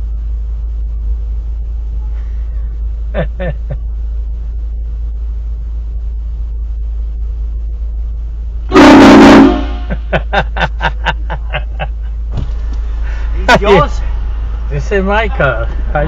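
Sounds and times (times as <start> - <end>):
steady low hum: 0.0 - 16.0
loud train horn blast: 8.7 - 10.1.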